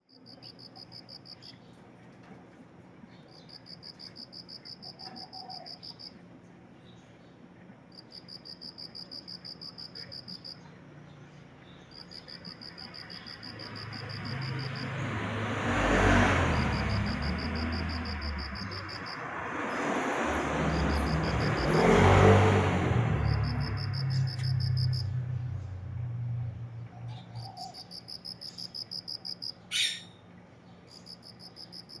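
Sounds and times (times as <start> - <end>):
cricket chirping: 0.0 - 1.6, 3.3 - 6.2, 7.9 - 10.8, 11.6 - 30.1, 30.9 - 32.0
car passing: 12.2 - 29.2.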